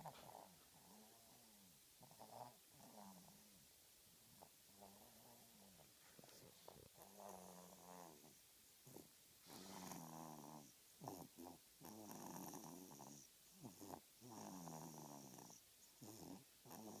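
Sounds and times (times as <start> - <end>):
person snoring: 9.5 - 17.0.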